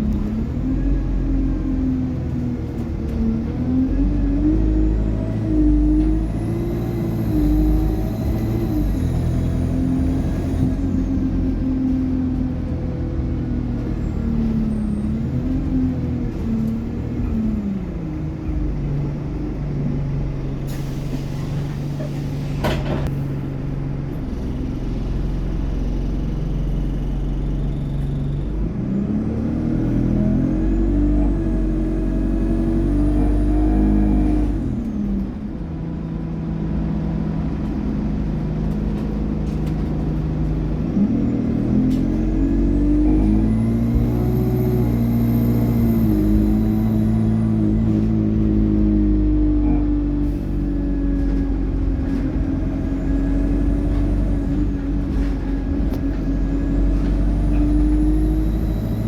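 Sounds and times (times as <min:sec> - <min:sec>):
bus engine revving: 0:00.0 - 0:59.0
faint turbo whine: 0:38.9 - 0:59.0.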